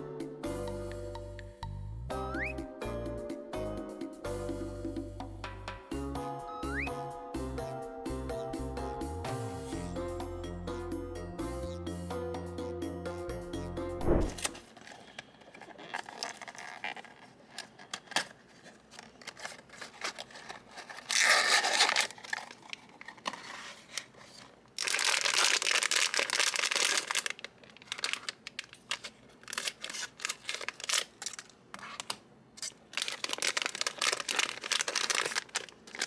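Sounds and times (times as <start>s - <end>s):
packaging crinkling: 14.2s - 36.0s
packaging tearing: 14.2s - 36.0s.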